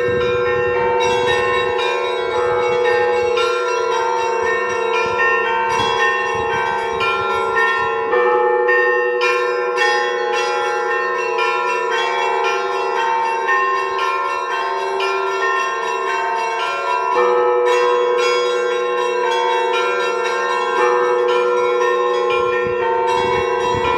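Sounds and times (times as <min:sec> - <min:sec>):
low bell humming: 0:00.0 - 0:10.2, 0:21.1 - 0:23.9
bells ringing in a pattern: 0:00.0 - 0:23.9.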